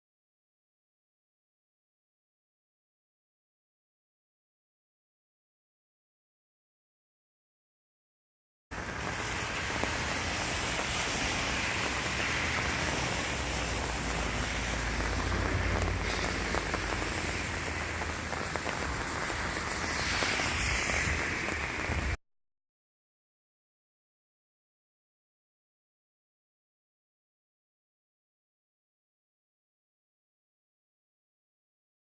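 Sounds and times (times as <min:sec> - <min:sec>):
rain falling steadily: 0:08.7 - 0:22.2.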